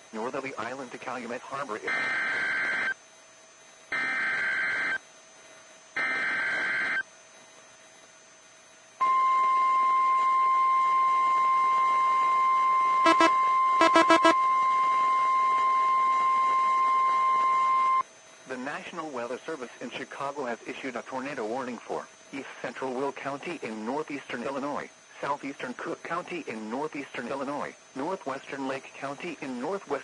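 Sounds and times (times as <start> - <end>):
steady warning alarm tone: 0.0 - 28.7
digital header tone bursts: 13.0 - 14.4
short blips: 13.0 - 18.0.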